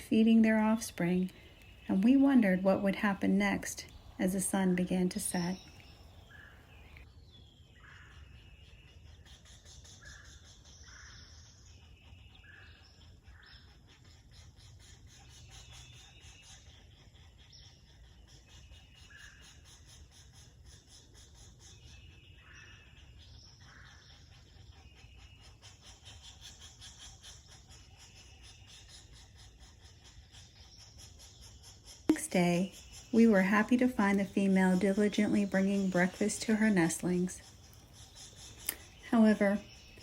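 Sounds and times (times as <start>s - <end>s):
insects trilling: 24.8s - 40.0s.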